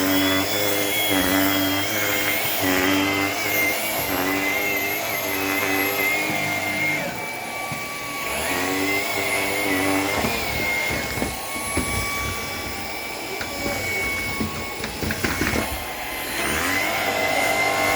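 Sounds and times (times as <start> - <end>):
stick vacuum motor whining: 0.0 - 17.9
knocks and rattles: 7.6 - 16.6.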